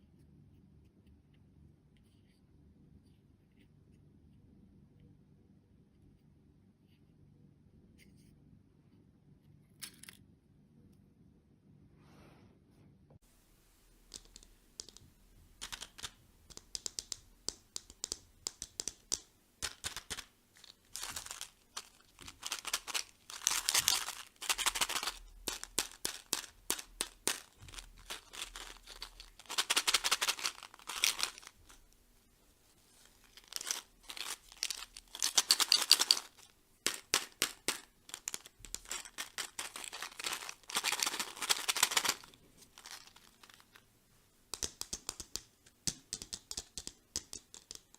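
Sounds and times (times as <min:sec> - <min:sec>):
candy wrapper crinkling: 0:13.8 - 0:32.0, 0:32.9 - 0:43.8
packaging tearing and rustling: 0:19.7 - 0:26.5, 0:27.4 - 0:31.8, 0:33.1 - 0:36.5.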